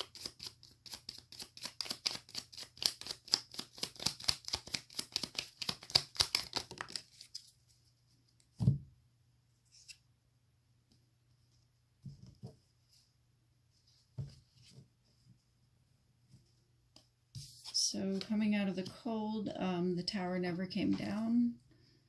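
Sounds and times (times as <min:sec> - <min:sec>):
cards being shuffled: 0:00.0 - 0:07.6.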